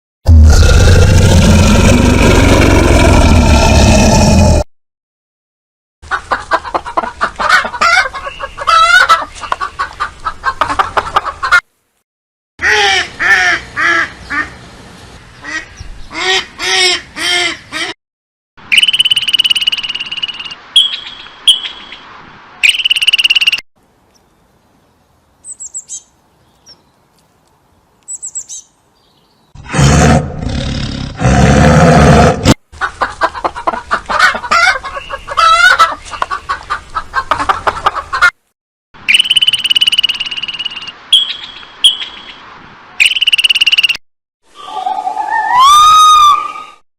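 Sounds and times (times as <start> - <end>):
harsh rough animal call: 0.3 - 4.7, 29.6 - 32.6
birds chirping and warbling: 14.2 - 16.4, 18.7 - 29.6, 34.5 - 37.0, 39.1 - 42.4
high whistling calls: 18.7 - 22.0, 22.6 - 23.6, 39.1 - 42.4, 43.0 - 44.0.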